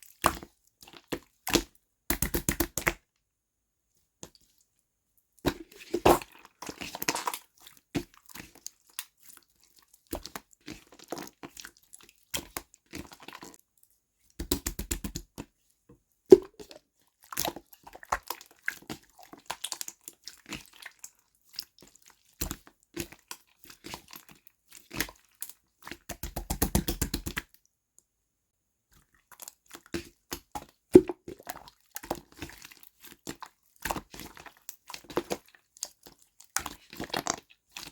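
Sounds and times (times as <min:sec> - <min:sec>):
slime squished by hand: 0:05.5 - 0:08.5.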